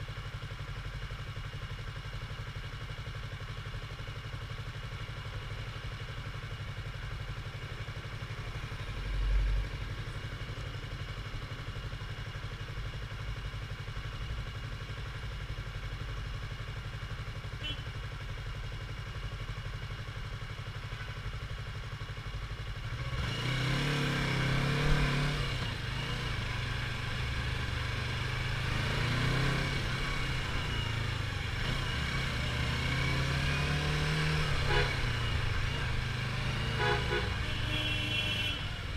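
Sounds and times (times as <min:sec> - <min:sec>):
motorcycle engine revving: 0:00.2 - 0:38.9.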